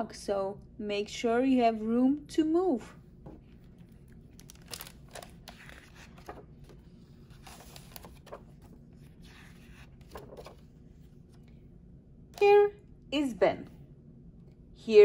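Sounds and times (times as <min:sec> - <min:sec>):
paper rustling and crinkling: 0:03.3 - 0:11.5.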